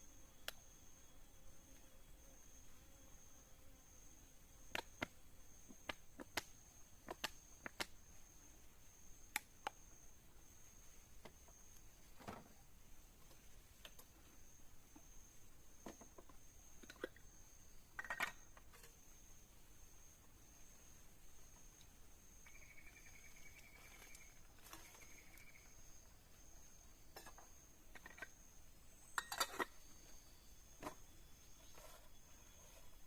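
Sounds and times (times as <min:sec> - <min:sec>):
rustle: 0:00.0 - 0:33.0
high-pitched insect drone: 0:22.4 - 0:26.0.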